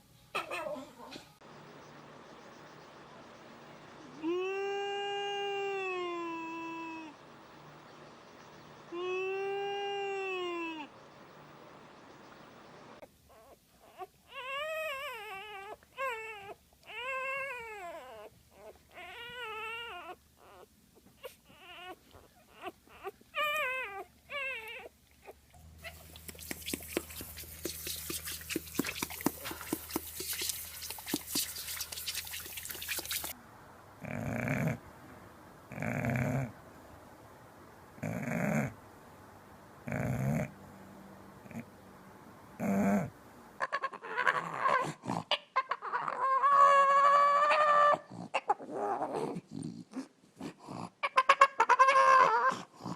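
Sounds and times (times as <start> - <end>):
dog whining: 13.3 - 30.0, 42.6 - 50.1, 51.0 - 52.9
crackling noise: 25.5 - 38.0.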